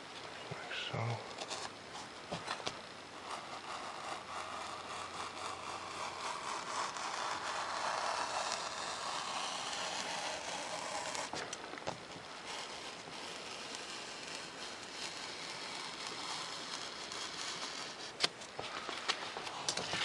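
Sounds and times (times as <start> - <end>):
knife scraping through foam: 3.2 - 11.4, 12.3 - 20.0.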